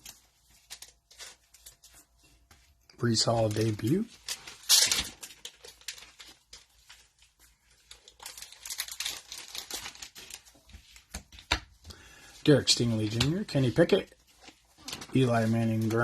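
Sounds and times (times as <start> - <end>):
cellophane wrapper crinkling: 0.0 - 11.5, 12.4 - 16.0
cellophane wrapper ripping: 3.0 - 11.1.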